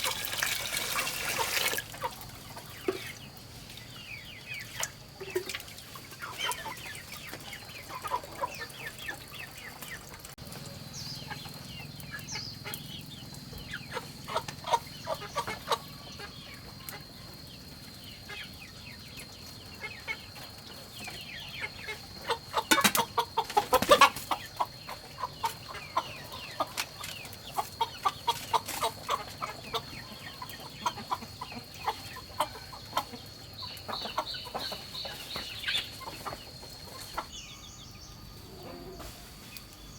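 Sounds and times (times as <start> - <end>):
chickens clucking: 0.0 - 39.9.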